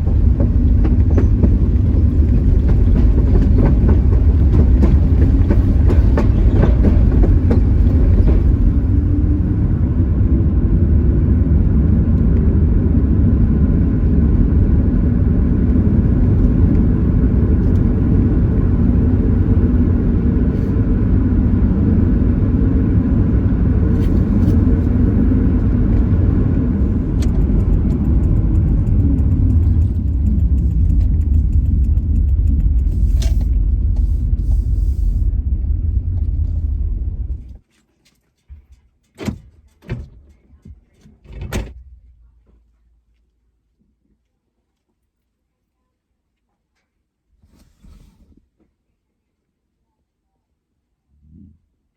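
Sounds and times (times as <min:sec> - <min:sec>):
car engine and tyres rumbling: 0:00.0 - 0:37.7.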